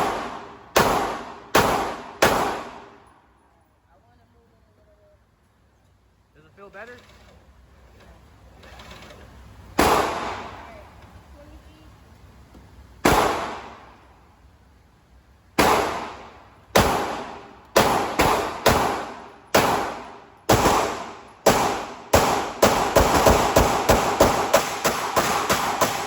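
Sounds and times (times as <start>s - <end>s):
gunshots echoing: 0.0s - 3.1s, 9.8s - 10.8s, 13.0s - 14.0s, 15.6s - 26.0s.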